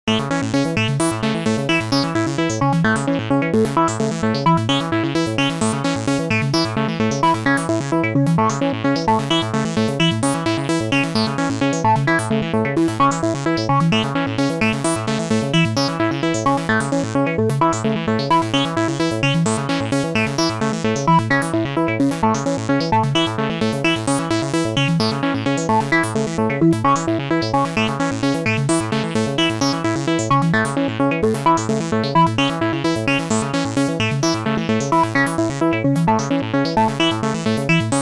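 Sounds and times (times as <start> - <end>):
pulsing bass line: 0.1 - 38.0.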